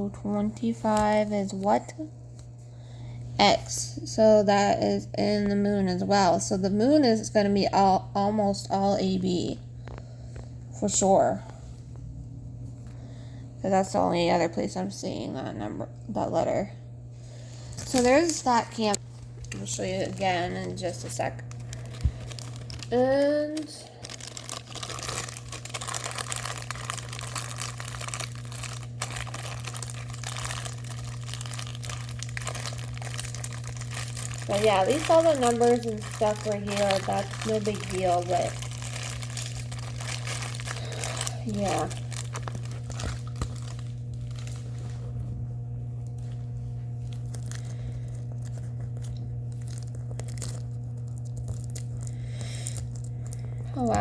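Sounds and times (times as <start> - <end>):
low electrical hum: 0.0 - 54.0
plastic packaging crinkling: 0.2 - 2.6, 17.3 - 45.4, 46.0 - 54.0.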